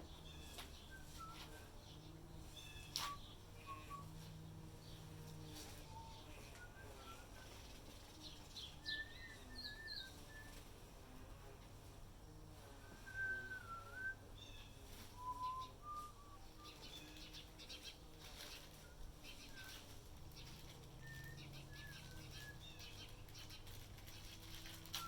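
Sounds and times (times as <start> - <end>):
soft chirps and clicks: 2.8 - 4.0
gliding whistled notes: 12.9 - 14.2, 15.2 - 16.8.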